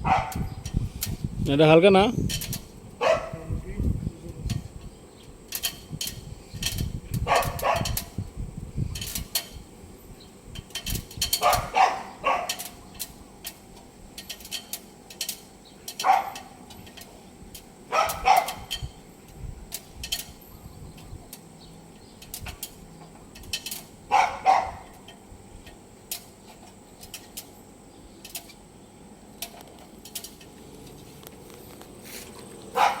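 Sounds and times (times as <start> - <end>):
dog barking: 0.0 - 0.4, 3.0 - 3.4, 7.3 - 8.0, 11.4 - 12.6, 16.0 - 16.4, 17.9 - 18.7, 24.1 - 24.8, 32.8 - 33.0
light clicks and knocks: 29.4 - 32.5.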